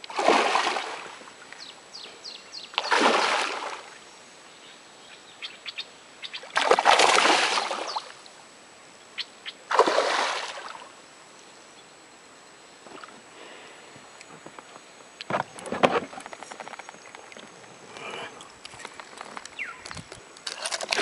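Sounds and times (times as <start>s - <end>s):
water splashing: 0.0s - 1.4s, 2.8s - 3.9s, 6.5s - 8.2s, 9.7s - 10.9s, 20.4s - 21.0s.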